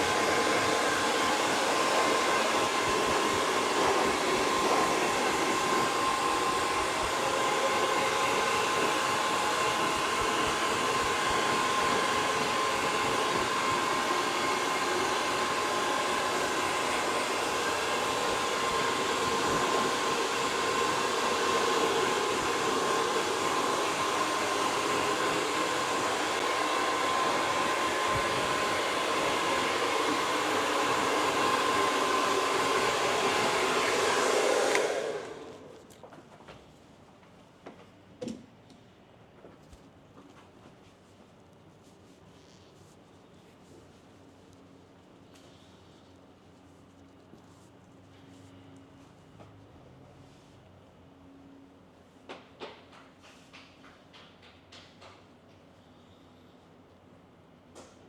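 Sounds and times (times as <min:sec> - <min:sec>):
hair dryer blowing: 0:00.0 - 0:35.9.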